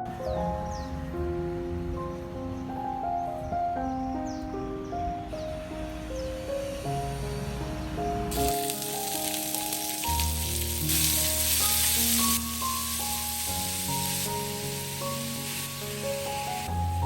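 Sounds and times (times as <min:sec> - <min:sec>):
soft background music: 0:00.0 - 0:17.0
food sizzling in a pan: 0:08.3 - 0:17.0.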